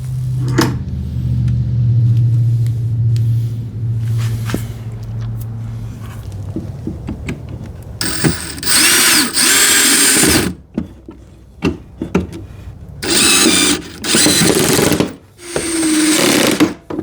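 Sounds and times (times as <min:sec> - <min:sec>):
power drill driving screws: 0:08.0 - 0:10.6, 0:13.0 - 0:16.9.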